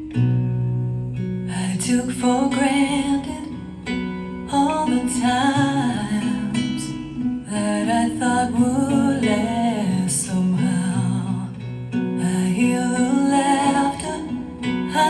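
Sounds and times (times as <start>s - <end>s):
pop song through a speaker: 1.5s - 3.6s, 4.5s - 11.6s, 12.2s - 15.0s.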